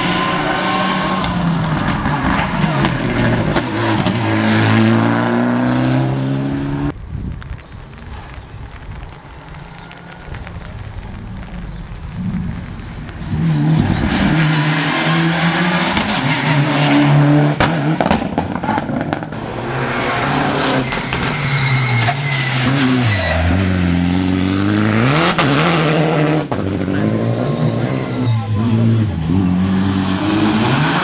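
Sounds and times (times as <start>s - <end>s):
rally car engine revving: 0.0s - 6.9s, 13.2s - 31.0s.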